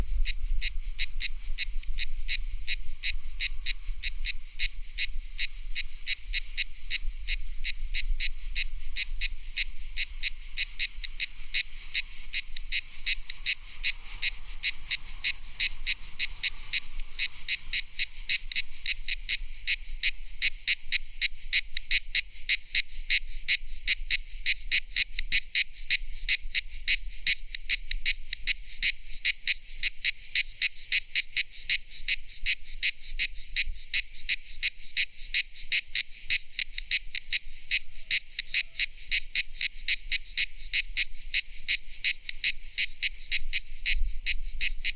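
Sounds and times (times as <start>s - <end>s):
cicadas pulsing chorus: 0.0s - 44.9s.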